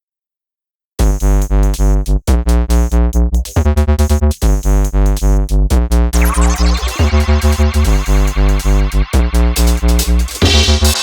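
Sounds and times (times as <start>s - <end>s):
heavy bass beat: 1.0s - 11.0s
rising synth sweep: 6.2s - 11.0s
synthesizer chords: 6.2s - 11.0s.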